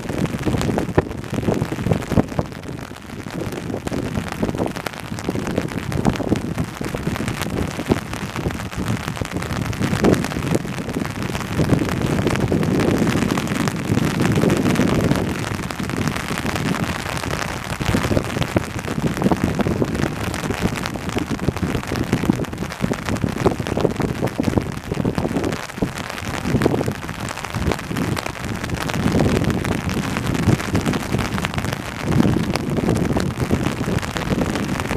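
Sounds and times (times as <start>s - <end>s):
rain falling: 0.0s - 34.9s
wind gusts: 0.0s - 34.9s.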